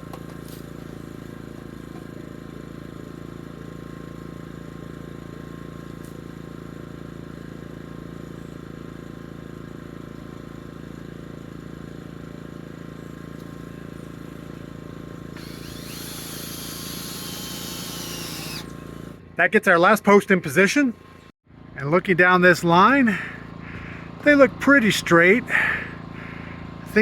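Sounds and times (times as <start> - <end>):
steady engine hum: 12.2 - 27.0.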